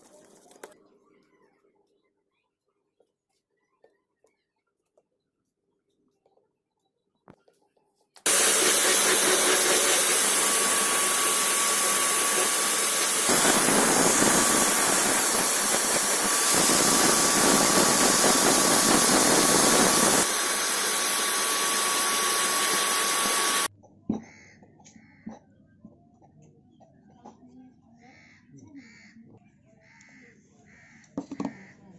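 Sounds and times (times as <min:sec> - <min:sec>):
faint steady whine: 0:08.3 - 0:23.7
hissing spray: 0:08.3 - 0:23.7.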